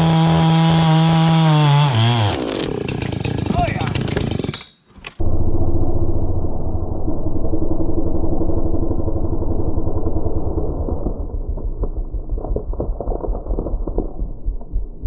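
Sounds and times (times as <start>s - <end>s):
muffled chainsaw under load: 0.0s - 5.2s.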